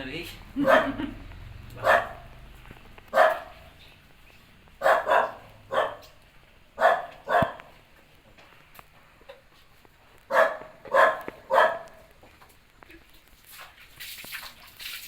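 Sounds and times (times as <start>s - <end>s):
dog barking: 0.6s - 1.2s, 1.8s - 2.4s, 3.1s - 3.8s, 4.8s - 6.2s, 6.8s - 7.7s, 10.3s - 12.1s.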